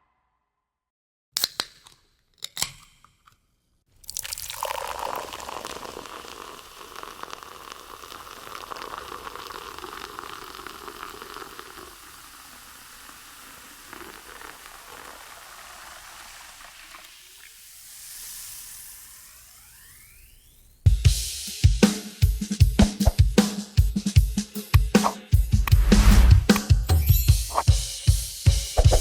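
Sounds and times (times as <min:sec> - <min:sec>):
sizzling crackling hiss: 0:05.6 - 0:20.9
faint rising tone: 0:19.4 - 0:20.8.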